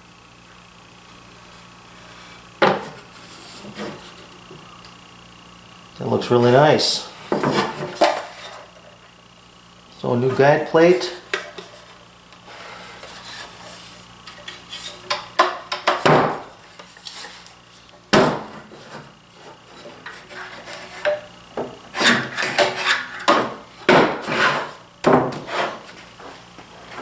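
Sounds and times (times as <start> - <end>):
scraping on a bench: 18.2 - 27.0.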